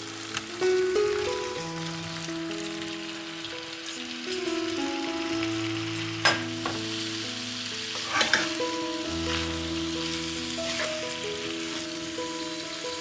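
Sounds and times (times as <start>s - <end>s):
food sizzling in a pan: 0.0s - 13.0s.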